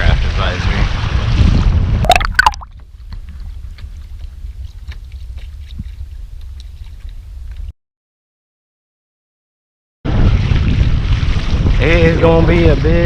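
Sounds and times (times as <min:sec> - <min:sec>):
wind rumbling on microphone: 0:00.0 - 0:07.7, 0:10.1 - 0:13.0
water lapping: 0:02.3 - 0:07.7.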